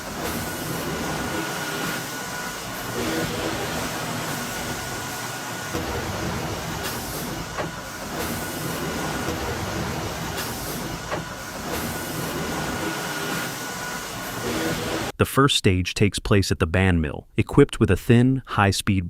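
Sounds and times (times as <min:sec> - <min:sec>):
sawmill machinery din: 0:00.0 - 0:15.1.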